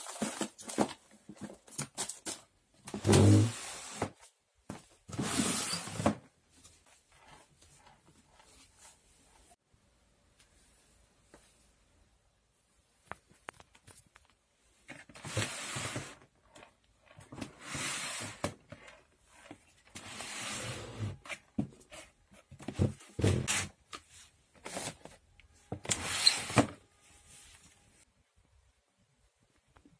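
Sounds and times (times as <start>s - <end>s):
objects sliding and rustling: 2.9s - 9.6s, 14.9s - 28.1s.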